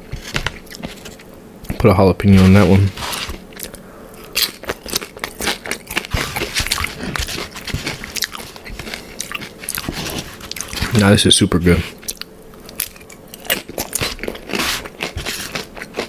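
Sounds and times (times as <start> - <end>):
tortilla chips crunching: 0.3 - 11.1, 12.0 - 16.0
chewing: 3.0 - 11.0, 12.0 - 16.0.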